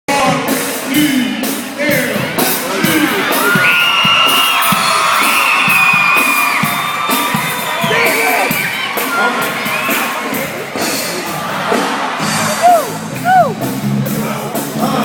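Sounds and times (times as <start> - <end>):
loud music with drum beat: 0.1 - 15.0
crowd yelling and whooping: 2.7 - 13.8.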